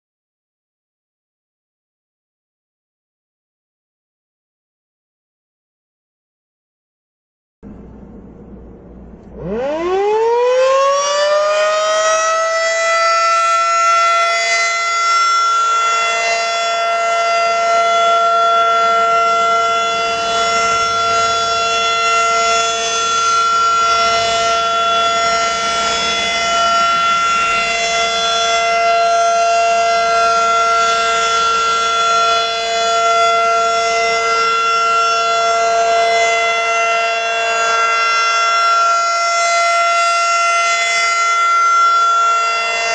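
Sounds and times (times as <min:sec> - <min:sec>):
warning siren wailing: 0:08.9 - 0:42.9.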